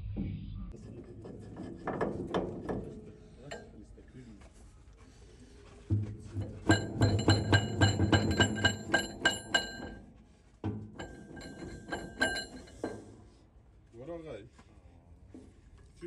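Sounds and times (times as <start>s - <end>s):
hammer striking metal: 6.4s - 10.1s.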